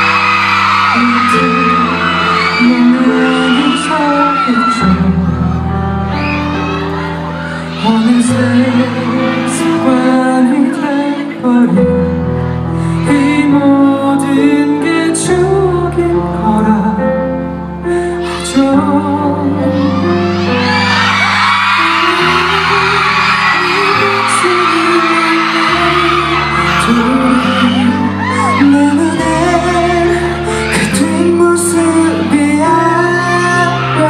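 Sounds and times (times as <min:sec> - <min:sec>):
fans screaming: 0:00.0 - 0:11.9, 0:18.0 - 0:34.0
pop ballad over loudspeakers: 0:00.0 - 0:34.0.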